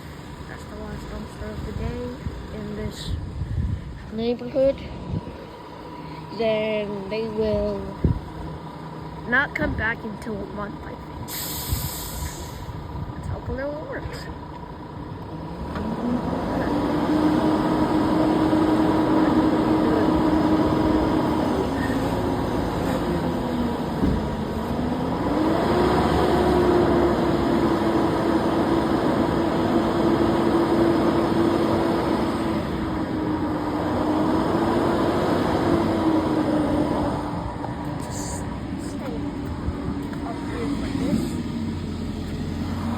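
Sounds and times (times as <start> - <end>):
garbage truck engine revving: 11.0 - 42.9.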